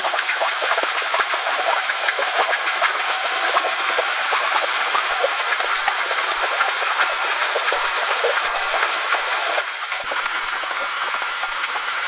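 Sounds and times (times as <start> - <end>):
splashing water in pool: 10.0 - 12.0.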